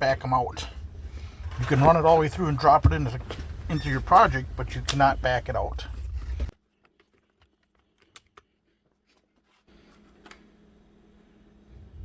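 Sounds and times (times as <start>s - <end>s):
steady low hum: 0.0s - 6.5s.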